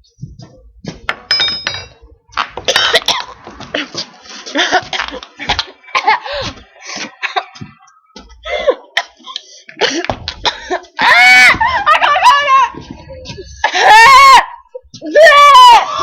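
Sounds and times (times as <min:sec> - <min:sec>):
girls coughing: 0:02.6 - 0:03.5, 0:07.2 - 0:07.8, 0:08.6 - 0:10.9
girls laughing: 0:03.2 - 0:15.0.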